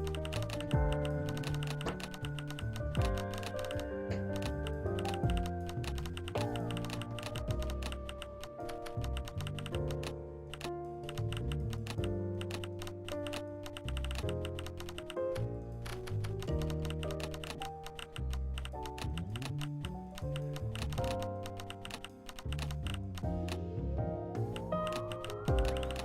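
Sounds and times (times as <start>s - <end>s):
fast sharp clicks: 0.0s - 23.6s, 24.6s - 26.0s
instrumental music with bass: 0.0s - 26.0s.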